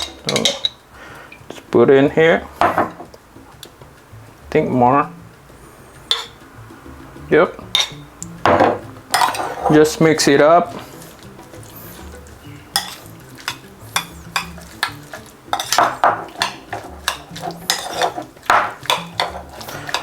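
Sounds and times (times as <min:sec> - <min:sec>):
utensil clinking against bowl: 0:00.0 - 0:00.8, 0:06.1 - 0:06.4, 0:07.6 - 0:20.0.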